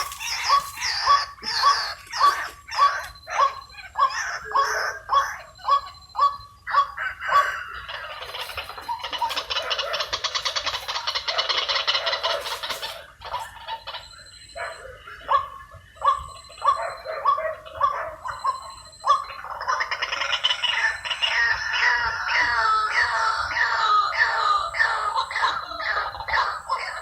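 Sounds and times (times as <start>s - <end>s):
bird rattling chatter: 0.0s - 3.0s, 7.9s - 14.1s
bird croaking notes: 0.0s - 27.0s.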